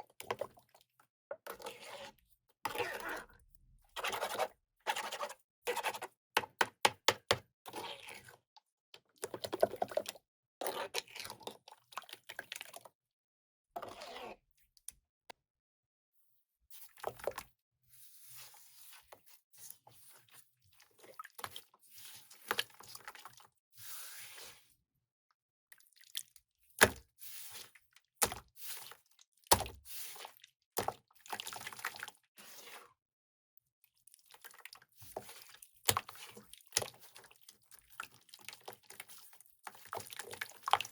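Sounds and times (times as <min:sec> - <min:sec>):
wet concrete squishing: 0:02.7 - 0:03.3, 0:28.2 - 0:32.2, 0:34.2 - 0:40.9.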